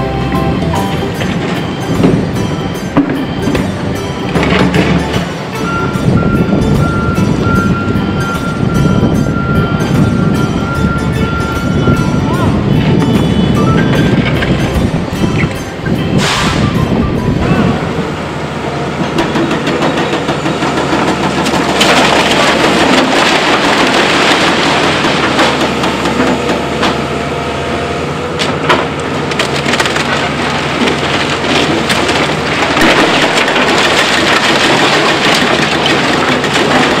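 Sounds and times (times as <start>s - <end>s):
heavy machinery engine running: 0.0s - 37.0s
rocks clattering and grinding: 19.2s - 26.6s, 28.4s - 37.0s.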